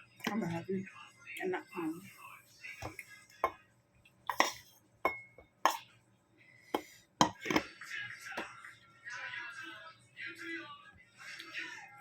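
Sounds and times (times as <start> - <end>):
cutlery clinking against plate: 4.3 - 5.8, 6.8 - 7.7.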